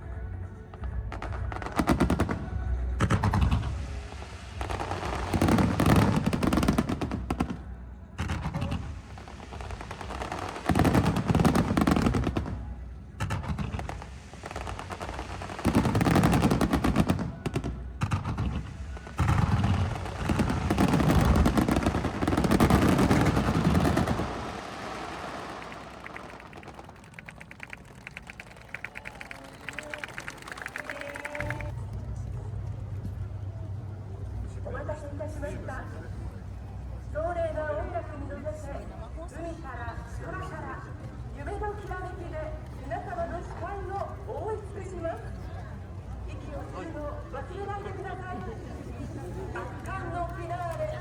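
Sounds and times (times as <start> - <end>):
fireworks bursting and crackling: 0.9 - 31.8.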